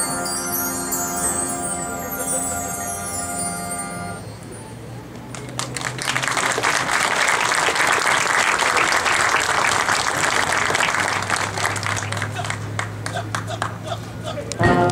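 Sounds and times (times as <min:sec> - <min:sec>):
audience applauding: 0:05.3 - 0:14.0.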